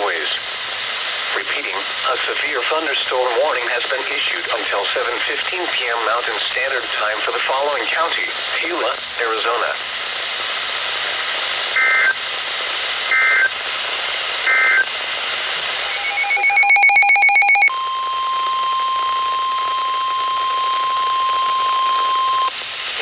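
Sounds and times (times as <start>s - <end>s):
radio hiss: 0.0s - 16.7s
steady warning alarm tone: 15.8s - 22.5s
weather-alert data tones: 15.8s - 22.5s.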